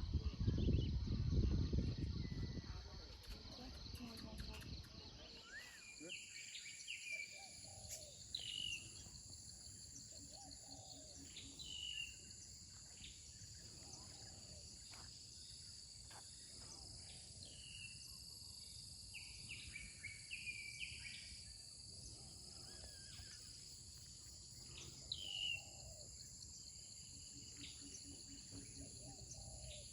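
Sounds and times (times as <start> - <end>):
insects droning: 0.6 - 29.9.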